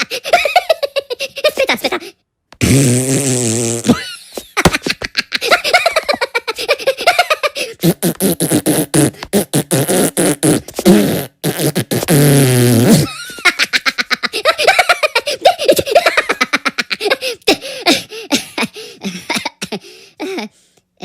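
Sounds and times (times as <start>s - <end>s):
cartoon voices giggling: 0.0s - 2.1s, 3.8s - 8.0s, 13.0s - 17.6s
fart sound effect: 2.6s - 4.1s, 7.8s - 13.1s.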